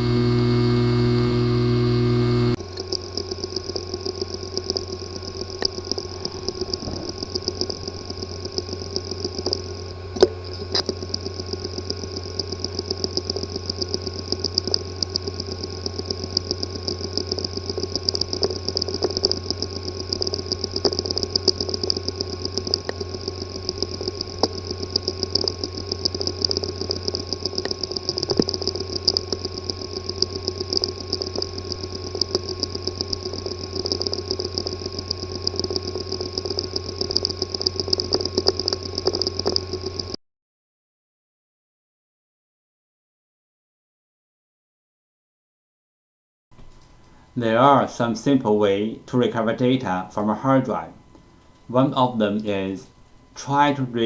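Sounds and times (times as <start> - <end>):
hard drive humming and whining: 0.0 - 40.2, 46.6 - 54.0
hard drive rapid ticking: 0.0 - 40.2
hard drive sharp click: 0.0 - 40.2.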